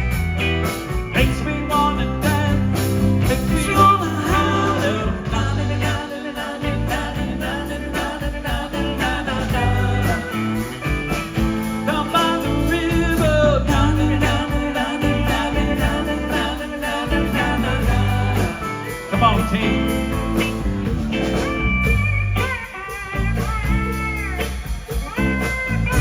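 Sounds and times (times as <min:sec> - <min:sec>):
country blues rock song: 0:00.0 - 0:26.0.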